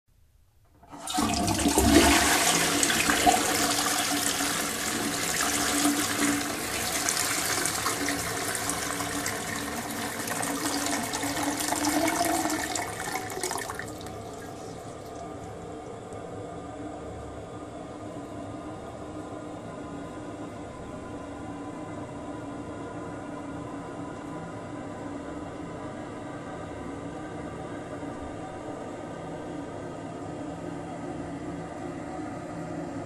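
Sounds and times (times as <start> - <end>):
toilet flushing: 0.8 - 16.0.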